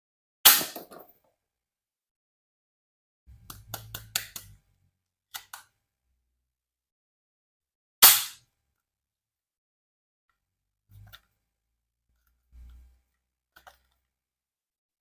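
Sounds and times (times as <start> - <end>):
toy pistol firing crack: 0.5 - 0.9, 8.0 - 8.4.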